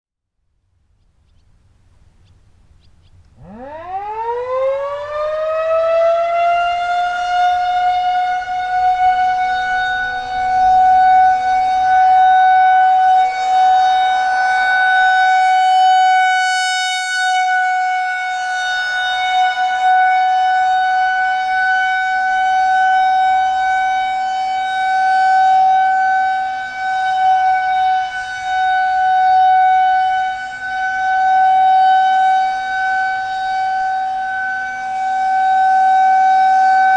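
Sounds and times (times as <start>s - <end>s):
rotating warning siren: 2.9s - 36.9s.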